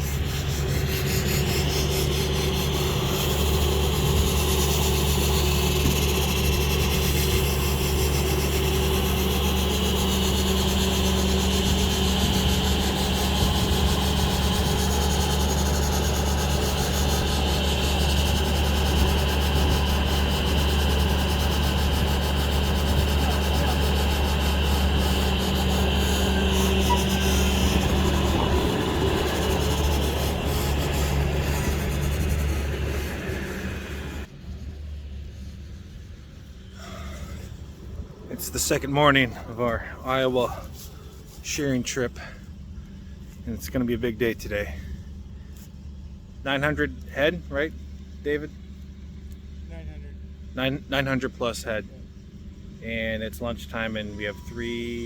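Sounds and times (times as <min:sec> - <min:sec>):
rough rubbing rasping noise: 0:00.0 - 0:42.2
mechanical hum: 0:00.0 - 0:55.0.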